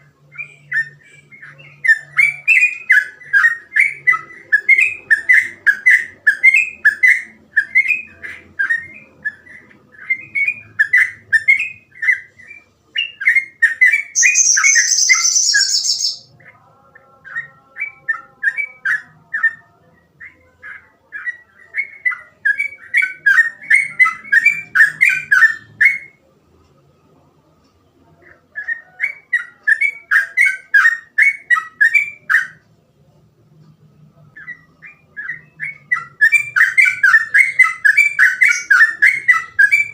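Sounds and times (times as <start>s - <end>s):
bird singing whistled notes: 0.3s - 16.3s
harsh high-pitched bird call: 14.1s - 16.4s, 34.4s - 39.9s.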